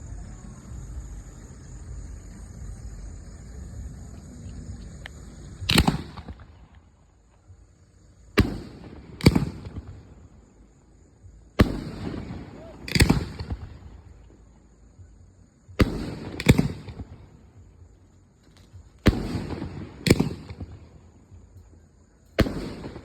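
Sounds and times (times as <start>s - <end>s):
fireworks shells booming: 5.6s - 6.8s, 8.2s - 10.3s, 11.5s - 14.3s, 15.7s - 17.7s, 18.5s - 21.6s, 22.4s - 23.0s.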